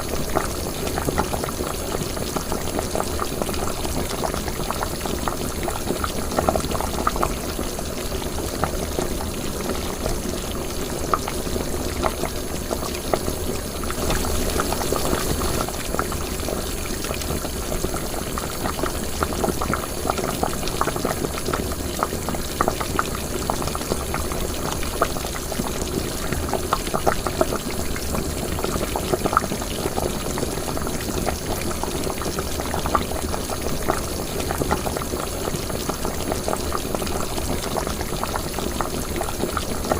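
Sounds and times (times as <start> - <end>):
liquid boiling and bubbling: 0.0 - 39.9.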